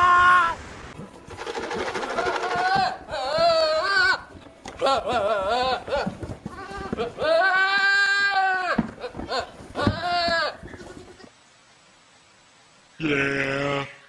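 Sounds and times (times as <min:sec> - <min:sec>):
goat bleating: 0:02.0 - 0:11.3.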